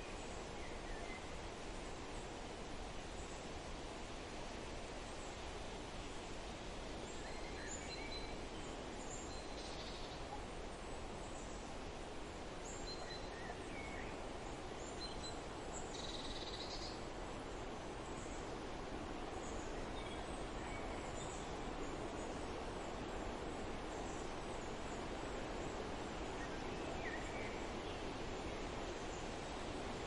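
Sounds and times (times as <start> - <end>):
wind through a forest: 0.0 - 30.0.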